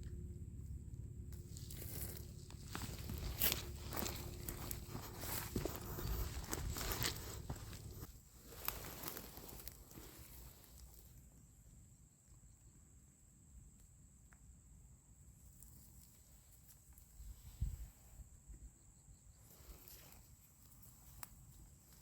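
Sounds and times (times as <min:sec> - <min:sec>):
low rumble: 0:00.0 - 0:08.1.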